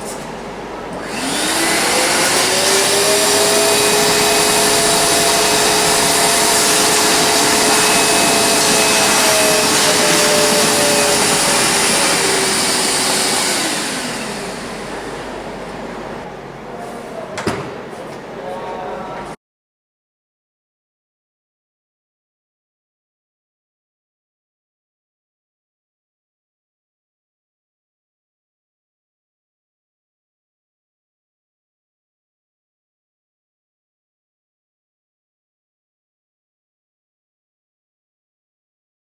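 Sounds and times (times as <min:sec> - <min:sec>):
vacuum cleaner motor whooshing: 0:01.0 - 0:16.2.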